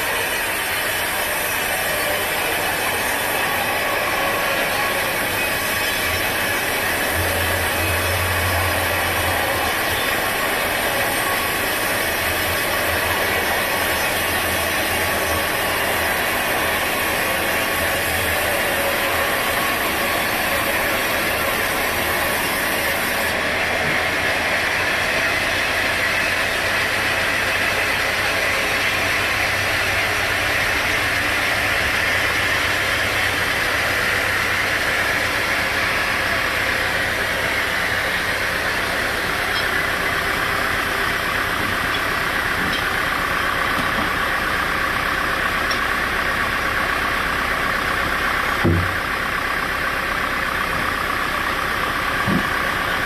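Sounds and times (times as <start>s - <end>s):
sawmill machinery running: 0.0s - 53.0s.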